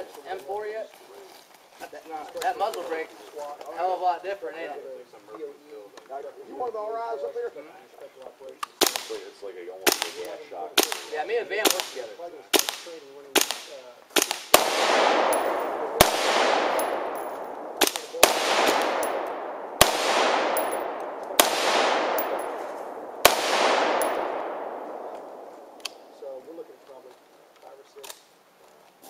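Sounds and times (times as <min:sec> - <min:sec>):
rifle single shots: 0:08.8 - 0:26.2
gunshot echo: 0:09.9 - 0:26.2.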